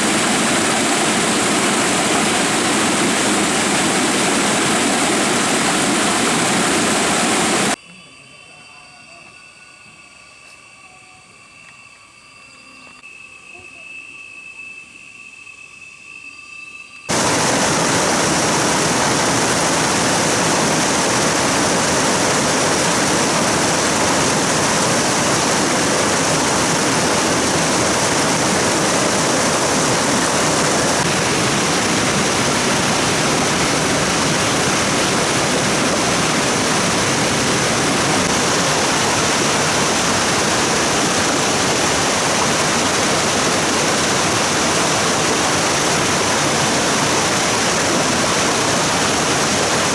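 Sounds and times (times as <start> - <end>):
stream water rushing: 0.0 - 7.8, 17.1 - 49.9.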